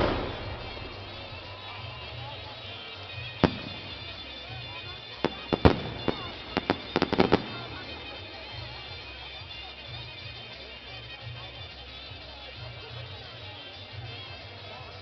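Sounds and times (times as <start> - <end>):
fireworks exploding: 0.0 - 8.4
faint voices: 0.0 - 15.0
music: 0.0 - 15.0.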